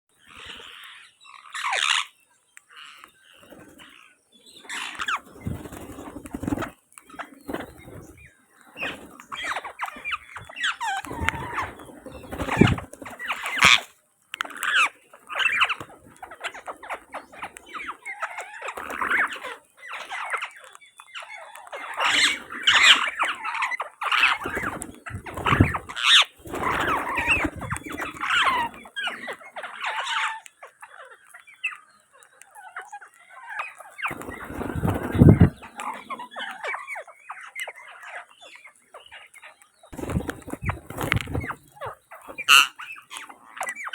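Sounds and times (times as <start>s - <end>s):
parakeets squawking and chattering: 0.2s - 43.9s.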